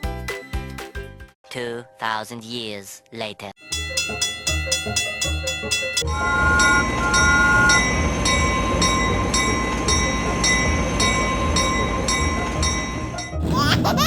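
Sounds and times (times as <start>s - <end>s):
high chime repeating: 3.6s - 13.4s
rhythmic clatter: 3.6s - 14.0s
two-note horn blasts: 4.9s - 12.7s.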